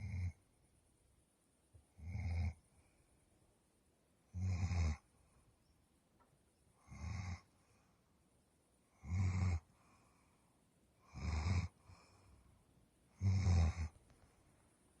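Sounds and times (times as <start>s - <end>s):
pet snoring: 0.0s - 0.4s, 1.9s - 2.6s, 4.3s - 5.1s, 6.8s - 7.5s, 8.9s - 9.8s, 11.0s - 12.1s, 13.1s - 14.0s.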